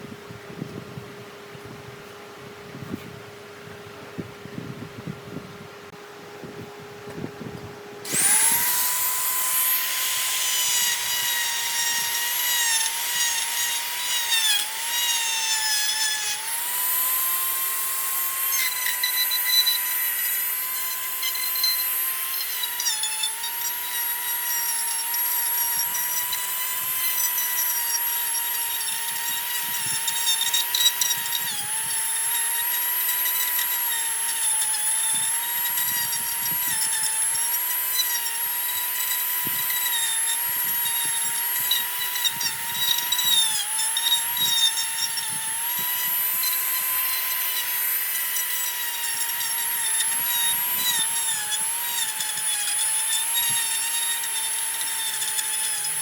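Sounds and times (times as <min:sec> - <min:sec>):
power tool whining: 0:07.0 - 0:56.0.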